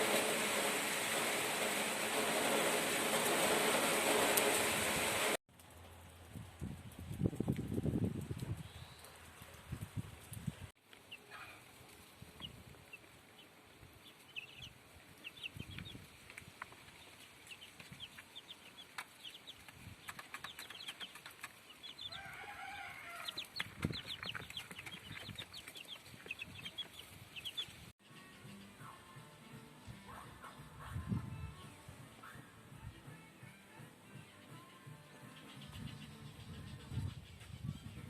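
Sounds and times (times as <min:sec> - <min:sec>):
chickens clucking: 0:12.4 - 0:27.8.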